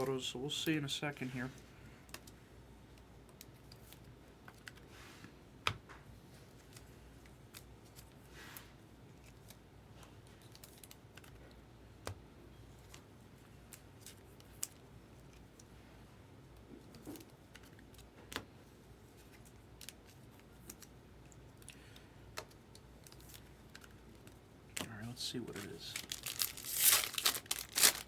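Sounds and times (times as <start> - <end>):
soft rustle of card pack: 0.0 - 5.5, 6.1 - 11.7, 12.5 - 28.0
cards clicking and snapping: 19.2 - 24.9.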